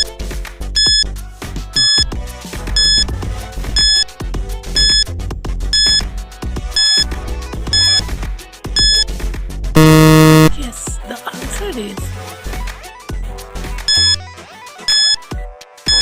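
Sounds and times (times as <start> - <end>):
background music: 0.0 - 16.0
timer beeps: 0.8 - 1.0, 1.8 - 2.1, 2.8 - 3.1, 3.8 - 4.1, 4.8 - 5.1, 5.8 - 6.0, 6.8 - 7.1, 7.7 - 8.1, 8.8 - 9.0, 9.8 - 10.6, 13.9 - 14.2, 14.9 - 15.3.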